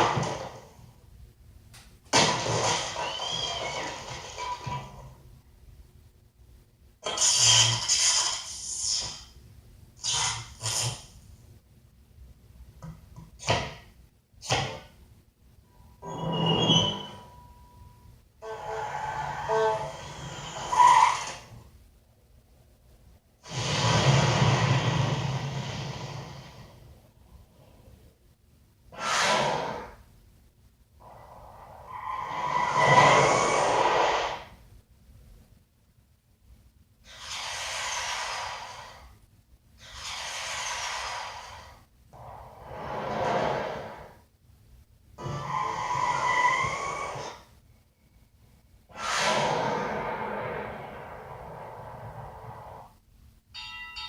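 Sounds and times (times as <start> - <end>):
noisy sound with held tone: 0.0 - 54.0
rumbling sound with tones: 0.0 - 54.0
breath-like whoosh: 48.9 - 53.0.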